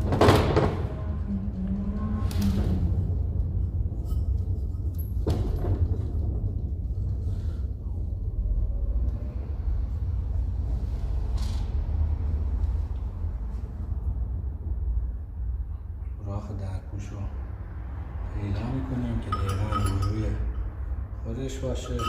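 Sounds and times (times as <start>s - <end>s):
low rumble: 0.0s - 22.0s
metal motor parts knocking: 19.3s - 20.1s.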